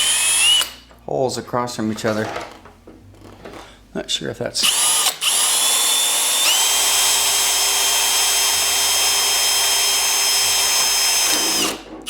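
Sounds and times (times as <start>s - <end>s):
electric drill whining: 0.0s - 0.8s, 4.6s - 11.9s.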